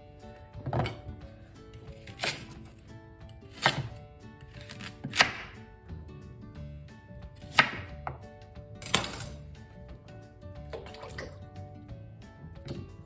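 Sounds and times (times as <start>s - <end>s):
knife chopping on cutting board: 1.8s - 2.8s, 3.5s - 5.6s, 7.4s - 8.2s, 8.8s - 9.4s.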